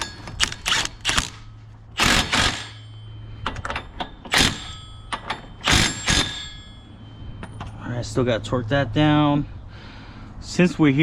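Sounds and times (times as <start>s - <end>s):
impact wrench rattling bursts: 0.0s - 6.8s.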